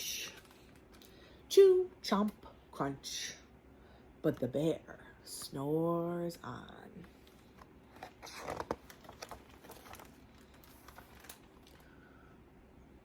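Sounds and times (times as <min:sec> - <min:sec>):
paper page rustle: 0:07.2 - 0:11.9.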